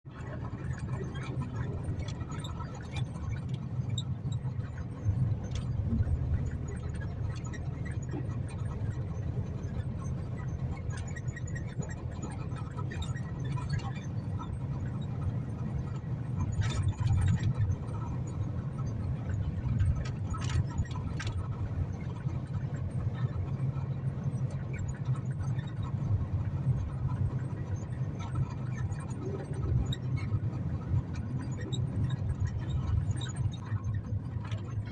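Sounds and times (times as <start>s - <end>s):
sharp rattles and clicks: 19.4s - 22.3s.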